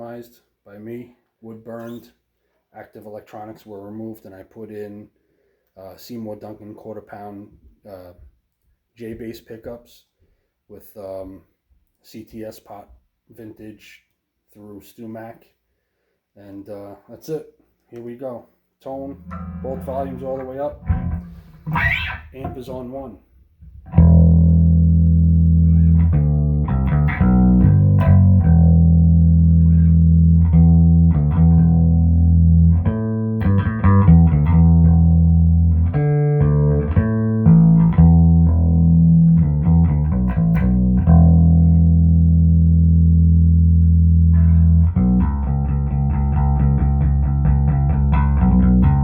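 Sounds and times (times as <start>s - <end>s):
electric bass guitar playing: 19.0s - 49.0s.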